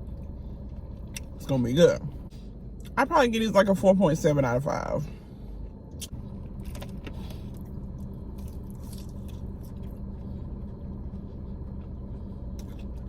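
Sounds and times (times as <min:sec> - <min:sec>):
low hum: 0:00.0 - 0:13.0
chewing crispy food: 0:05.9 - 0:13.0.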